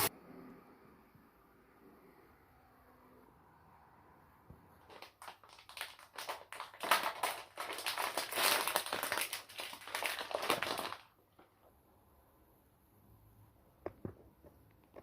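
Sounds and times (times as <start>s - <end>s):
crinkling and crackling: 4.8s - 11.8s.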